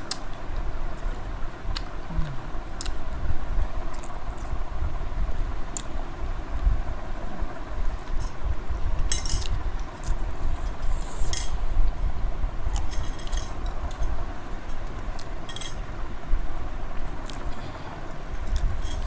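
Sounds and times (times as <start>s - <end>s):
spoons clinking on plates: 9.1s - 9.5s, 12.8s - 14.1s, 15.5s - 15.8s.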